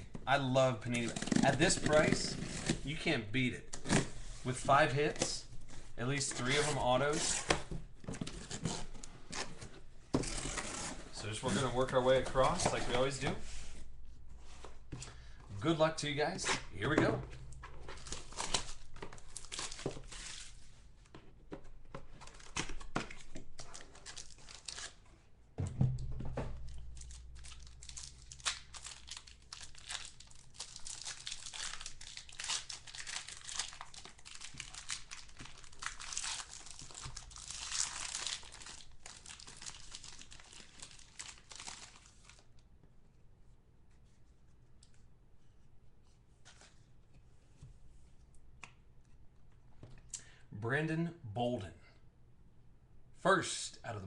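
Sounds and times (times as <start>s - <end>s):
plastic wrapping crinkling and tearing: 16.8s - 20.6s, 22.2s - 25.0s, 26.6s - 42.6s
dull thump: 25.6s - 26.8s.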